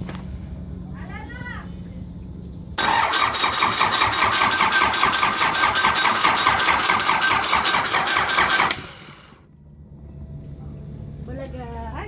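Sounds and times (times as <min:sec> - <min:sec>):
diesel engine cranking by starter: 0:02.8 - 0:09.5.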